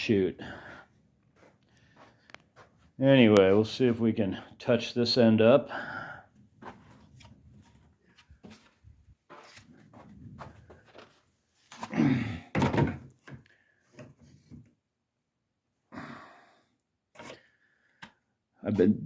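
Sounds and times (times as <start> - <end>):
loud wooden thunks: 12.5 - 13.1.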